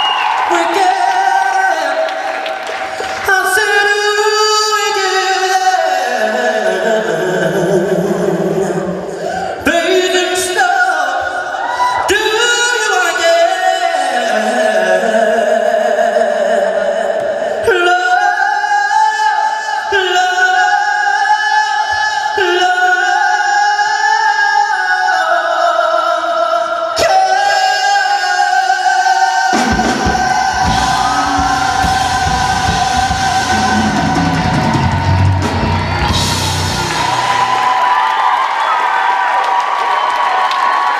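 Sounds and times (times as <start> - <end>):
man singing live: 0.0 - 37.6
band playing: 29.5 - 38.3
deep bass accompaniment: 29.8 - 37.5.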